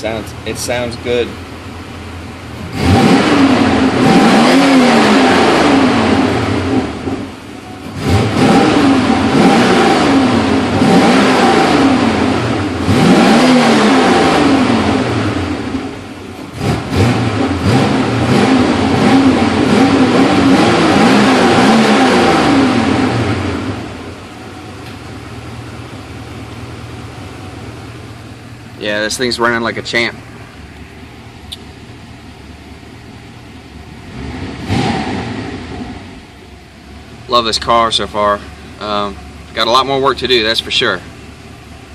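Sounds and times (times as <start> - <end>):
car engine revving: 0.0 - 41.9.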